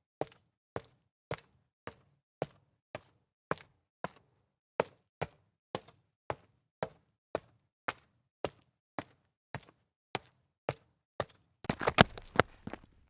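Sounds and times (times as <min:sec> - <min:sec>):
sneaker footsteps on concrete stairs: 0:04.8 - 0:13.0.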